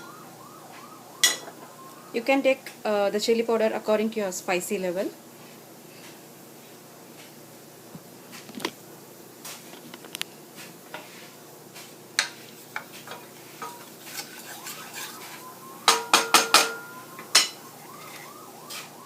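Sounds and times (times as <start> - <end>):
metal spoon scraping a pan: 12.2 - 18.9.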